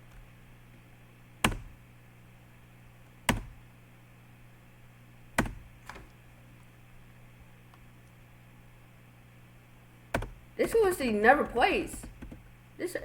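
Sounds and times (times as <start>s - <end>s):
low electrical hum: 0.0s - 13.0s
sharp clicks at a computer: 1.4s - 1.8s, 3.2s - 3.6s, 5.4s - 6.2s, 10.1s - 10.8s.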